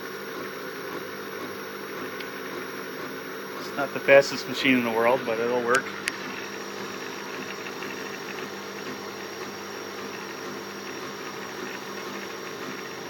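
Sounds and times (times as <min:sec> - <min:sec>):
stepper motors humming: 0:01.8 - 0:10.6.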